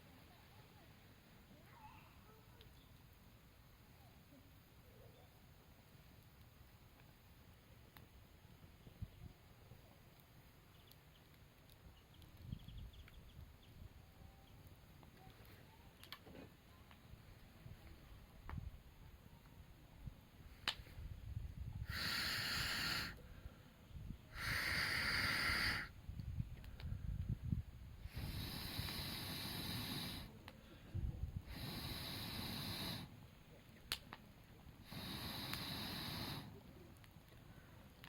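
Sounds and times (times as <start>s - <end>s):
fire crackling and popping: 5.9s - 13.9s, 14.5s - 17.5s, 20.3s - 23.2s, 23.9s - 38.0s
air blown into fire hissing: 20.4s - 33.3s, 34.7s - 36.8s.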